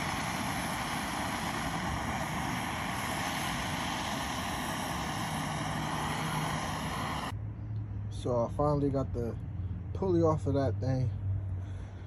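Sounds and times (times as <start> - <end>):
machine running steadily: 0.0 - 7.4.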